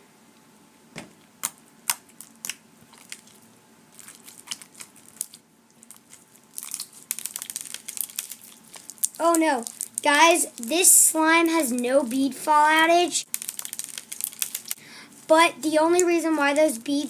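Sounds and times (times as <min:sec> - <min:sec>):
slime with beads crackling: 0:01.4 - 0:17.0.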